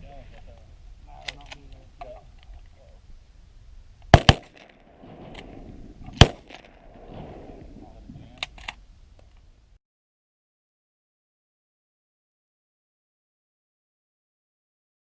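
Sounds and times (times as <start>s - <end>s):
faint sharp cracks: 4.0s - 6.8s
shotgun shots: 4.1s - 7.6s.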